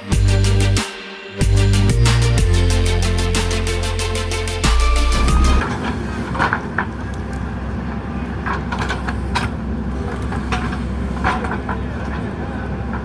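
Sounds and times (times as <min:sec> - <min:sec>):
music track: 0:00.0 - 0:05.7.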